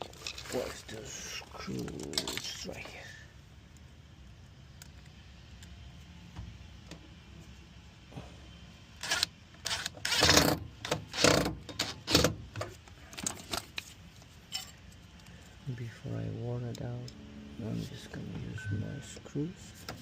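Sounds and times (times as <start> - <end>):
cordless drill driving a screw: 9.0 - 11.5.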